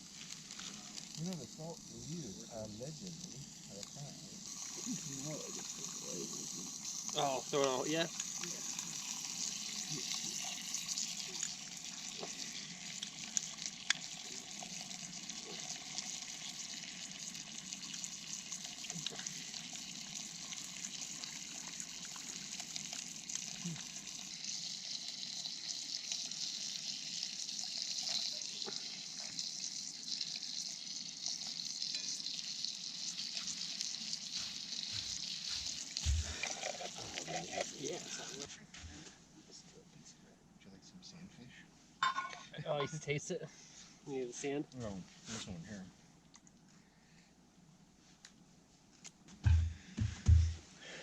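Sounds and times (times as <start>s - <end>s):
fish sizzling in a frying pan: 0.0s - 38.4s.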